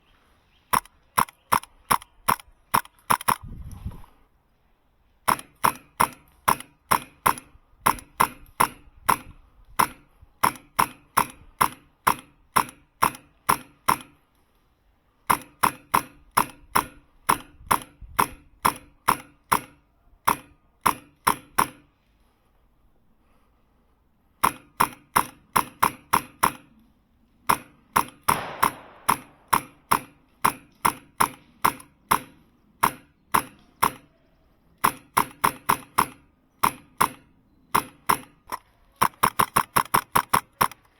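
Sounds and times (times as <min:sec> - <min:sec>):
airsoft rifle firing pops: 0:00.7 - 0:03.6, 0:05.2 - 0:14.2, 0:27.4 - 0:34.2, 0:34.8 - 0:40.9.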